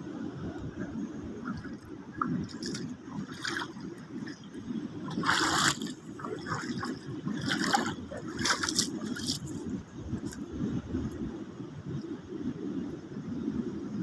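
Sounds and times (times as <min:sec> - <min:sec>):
seawater gurgling among rocks: 0:00.0 - 0:10.8
waves splashing: 0:00.0 - 0:10.8.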